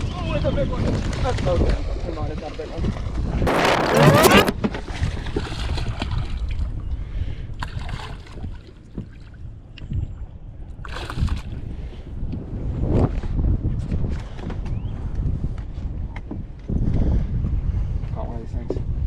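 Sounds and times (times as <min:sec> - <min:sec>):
short rushing noise: 0:03.5 - 0:04.5.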